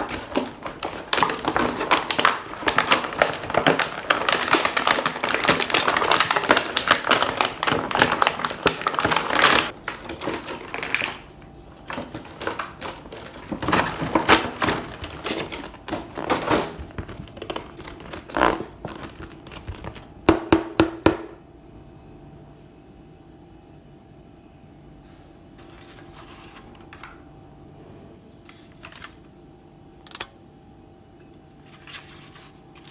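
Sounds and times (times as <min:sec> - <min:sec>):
plastic packaging crinkling: 0:00.0 - 0:20.5.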